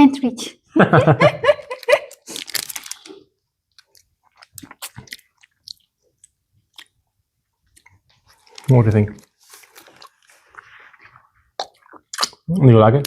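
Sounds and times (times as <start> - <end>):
chewing lollipop crunches: 2.1 - 7.0, 7.7 - 12.5
wet mouth clicks: 11.6 - 12.5.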